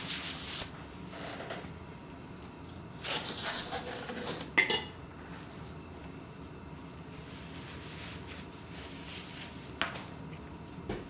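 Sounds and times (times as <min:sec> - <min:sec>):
tableware scraping: 0:03.1 - 0:05.0
tableware clinking: 0:04.6 - 0:05.0.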